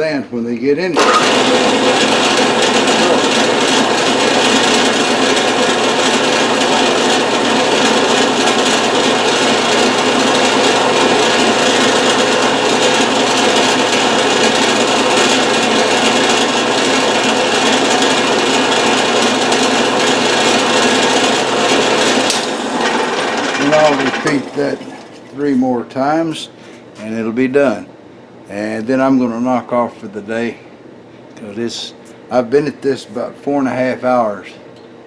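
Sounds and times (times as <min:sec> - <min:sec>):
electric power tool running: 0:01.0 - 0:25.3.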